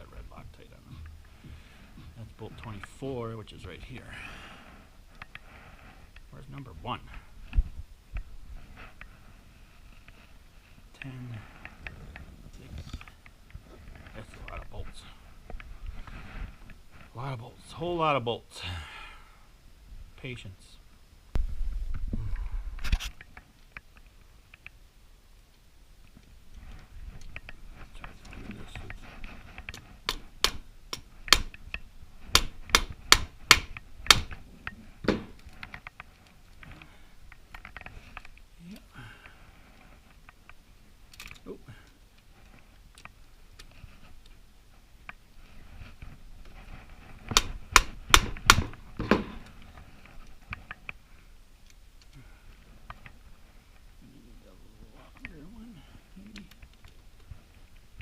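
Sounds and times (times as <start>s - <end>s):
hammer striking metal: 32.4s - 34.3s.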